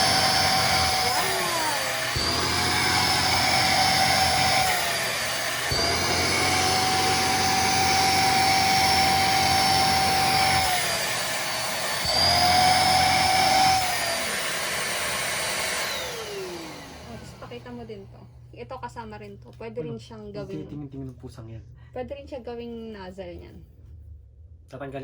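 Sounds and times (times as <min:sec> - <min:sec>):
vacuum cleaner motor whine: 0:00.0 - 0:18.2.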